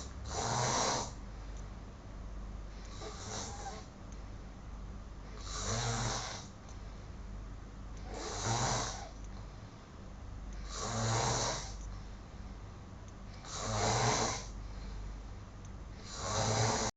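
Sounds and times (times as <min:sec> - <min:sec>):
man snoring heavily: 0:00.0 - 0:01.2, 0:02.8 - 0:03.9, 0:05.3 - 0:06.6, 0:08.0 - 0:09.2, 0:10.6 - 0:11.8, 0:13.4 - 0:14.6, 0:16.0 - 0:16.9.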